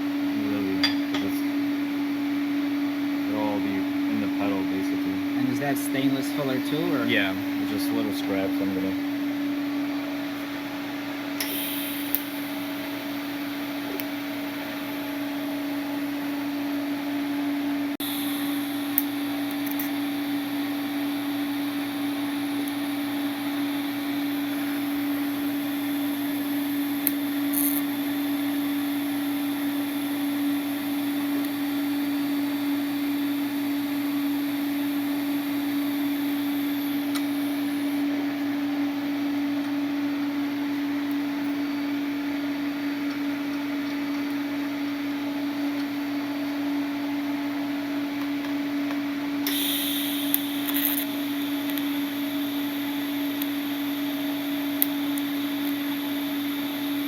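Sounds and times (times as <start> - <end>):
welder electrical hum: 0.0 - 57.0
hiss: 11.4 - 12.4, 49.4 - 57.0
high-pitched crackles: 18.0 - 29.8, 49.5 - 57.0.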